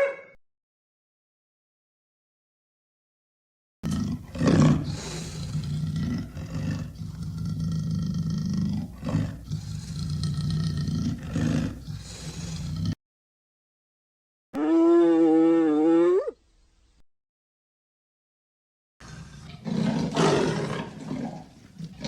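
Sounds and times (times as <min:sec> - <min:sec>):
long low animal call: 0:14.6 - 0:16.4.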